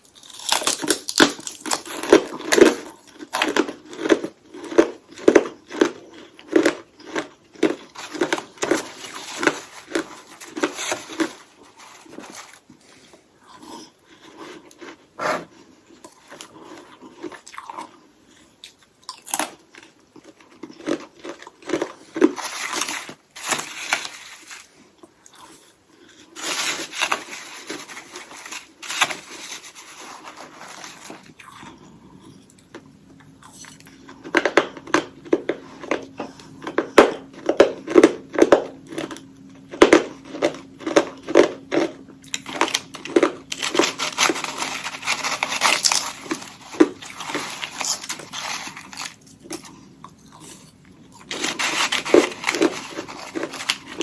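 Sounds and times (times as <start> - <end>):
ice crunching in mouth: 0.0 - 12.8, 18.6 - 31.8, 39.8 - 54.0
faint steady hum: 0.0 - 54.0.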